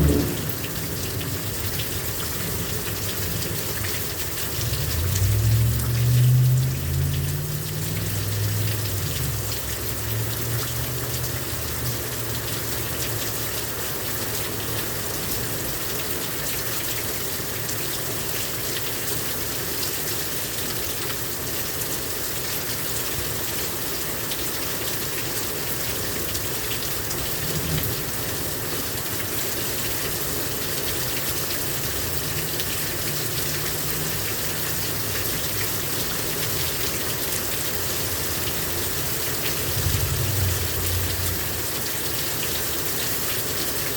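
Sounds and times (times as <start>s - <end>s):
low rumble: 0.0s - 1.8s, 39.0s - 42.2s
heavy rain pouring: 0.0s - 43.9s.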